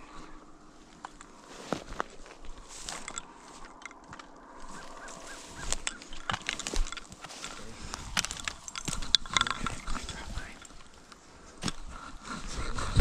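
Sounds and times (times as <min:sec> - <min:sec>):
clothing and gear rustling: 0:00.3 - 0:13.0
faint short repeated calls: 0:04.5 - 0:06.5.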